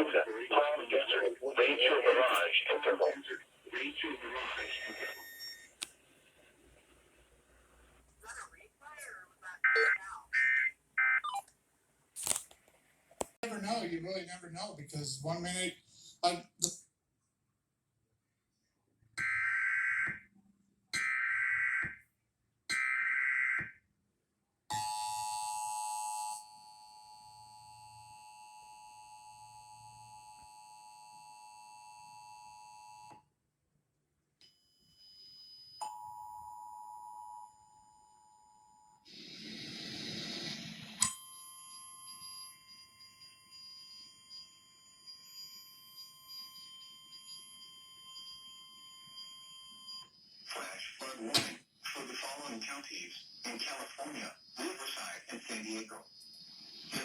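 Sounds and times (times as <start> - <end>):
burst of static: 39.1 - 41.0.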